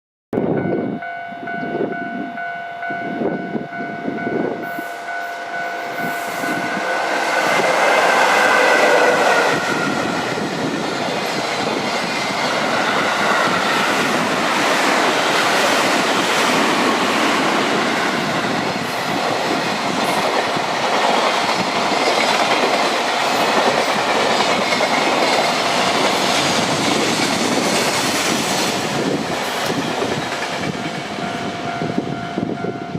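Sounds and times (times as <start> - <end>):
freight train passing: 0.4 - 32.9
level crossing alarm ringing: 0.6 - 9.6.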